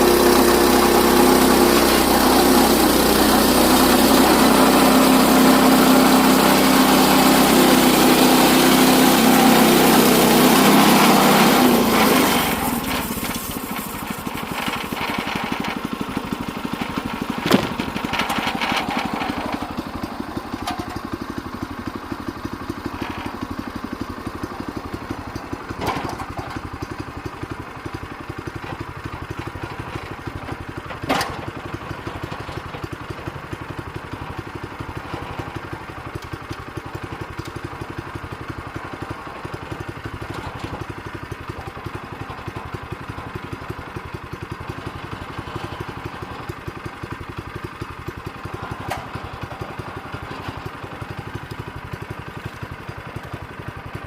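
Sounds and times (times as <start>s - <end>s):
small gas engine running: 0.0s - 54.0s
sharp knocks: 17.4s - 18.4s.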